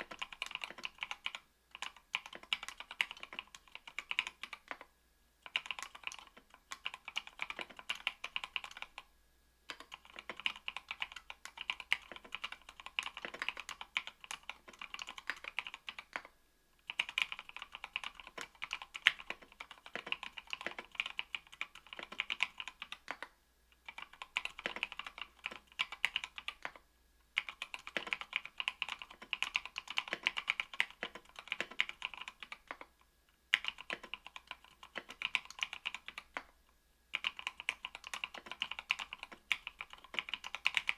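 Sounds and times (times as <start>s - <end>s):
fast mechanical keyboard typing: 0.0s - 9.1s, 9.7s - 26.8s, 27.4s - 32.9s, 33.5s - 36.5s, 37.1s - 40.9s.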